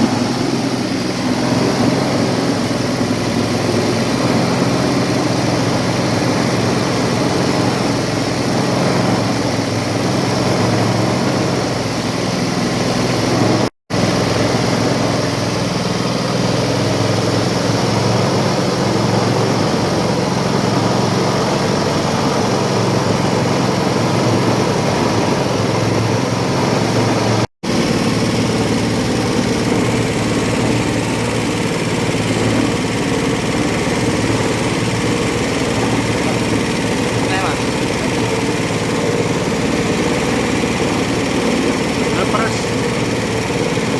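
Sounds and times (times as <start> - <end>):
grating machine droning: 12.6 - 43.9.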